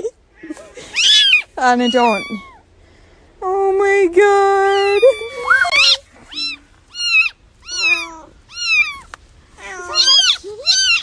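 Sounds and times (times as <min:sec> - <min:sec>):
cat meowing: 0:00.9 - 0:02.6, 0:04.8 - 0:11.0.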